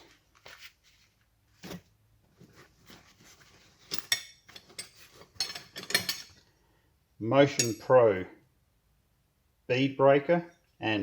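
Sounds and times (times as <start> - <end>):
metal tyre levers clinking: 3.9 - 6.4.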